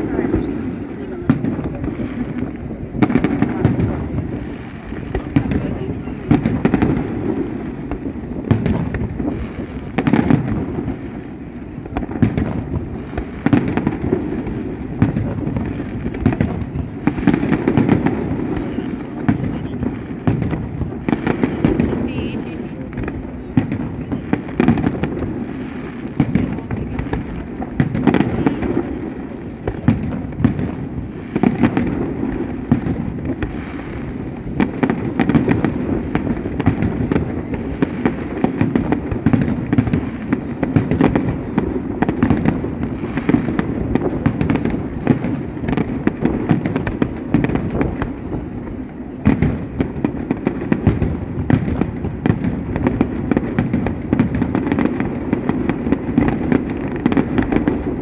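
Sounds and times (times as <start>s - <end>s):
fireworks crackling: 0.0s - 58.0s.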